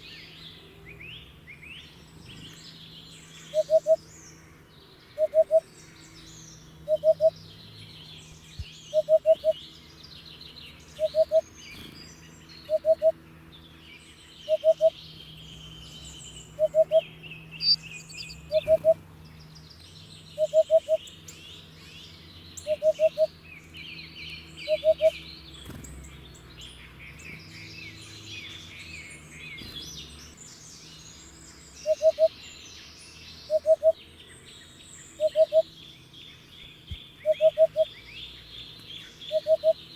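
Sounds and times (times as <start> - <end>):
small birds chirping: 0.0 - 39.9
hoopoe hooting song: 5.2 - 5.6.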